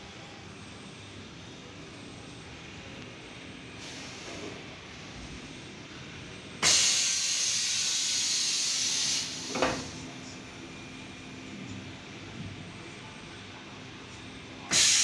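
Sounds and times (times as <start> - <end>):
steady machine hum: 0.0 - 15.0
pressurized air hissing: 3.8 - 4.5, 6.6 - 10.0, 14.7 - 15.0.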